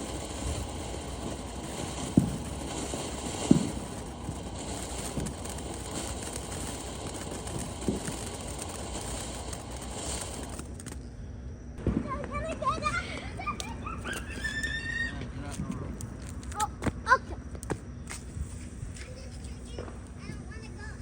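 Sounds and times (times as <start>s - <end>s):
distant fireworks bangs: 0.0s - 11.1s, 11.8s - 14.3s
steady outdoor hiss: 0.0s - 21.0s.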